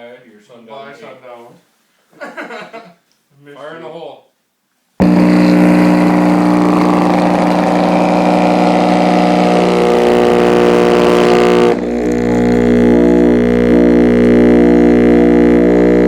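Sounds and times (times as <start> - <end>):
distorted droning subwoofer hum: 5.0 - 16.0.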